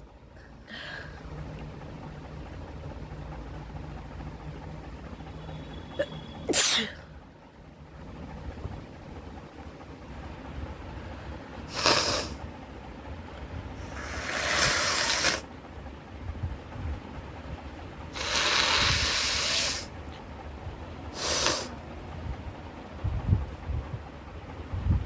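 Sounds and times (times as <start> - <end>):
person blowing nose: 11.7 - 12.4, 13.9 - 15.5, 18.2 - 19.9, 21.2 - 21.7.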